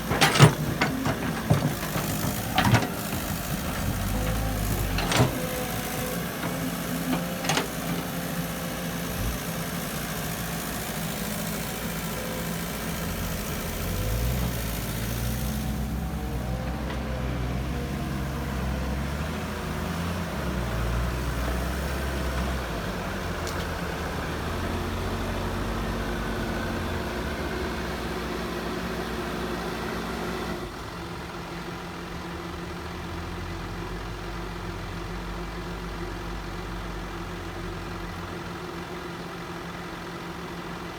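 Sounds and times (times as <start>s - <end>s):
heavy machine engine running: 0.0s - 32.8s.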